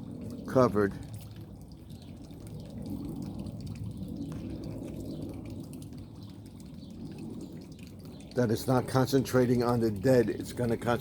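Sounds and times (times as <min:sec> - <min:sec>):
water trickling and dripping: 0:00.0 - 0:11.0.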